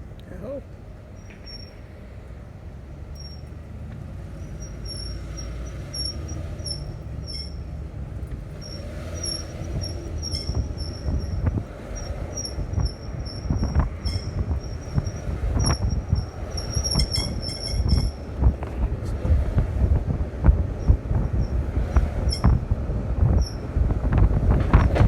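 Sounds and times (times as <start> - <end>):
low vehicle rumble: 0.0 - 25.0
high-pitched squeal in short chirps: 12.0 - 18.1.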